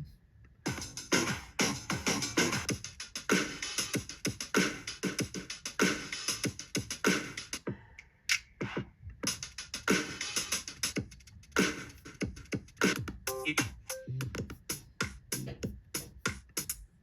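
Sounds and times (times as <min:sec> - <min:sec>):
drum machine beat: 0:00.7 - 0:16.9.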